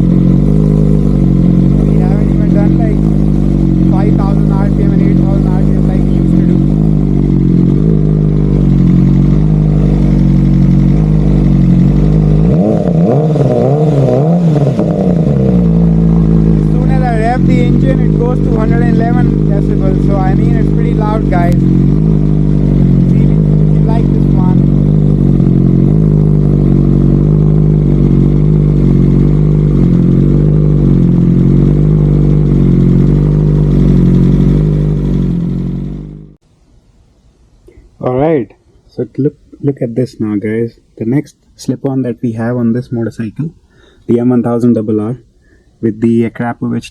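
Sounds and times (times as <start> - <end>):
motorcycle engine idling and revving: 0.0 - 36.4.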